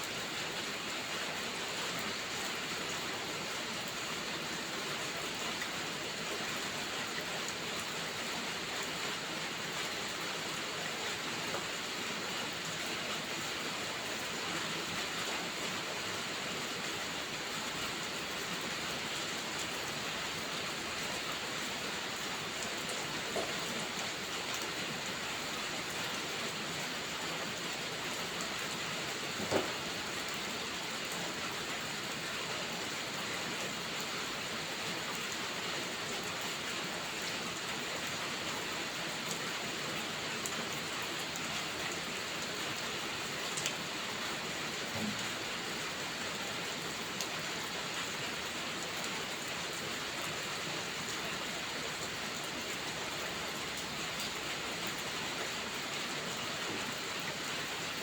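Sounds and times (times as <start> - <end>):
steady rain falling: 0.0 - 58.0
faint tick: 43.6 - 43.8.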